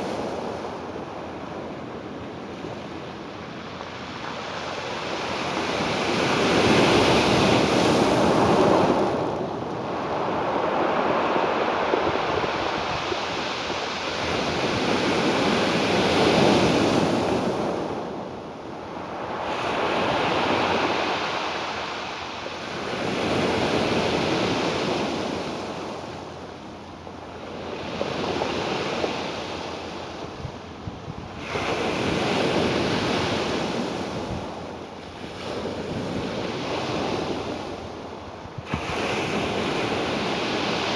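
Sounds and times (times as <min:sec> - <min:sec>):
wind noise on microphone: 0:00.0 - 0:25.8, 0:27.6 - 0:40.9
ocean waves washing on shore: 0:00.0 - 0:40.9.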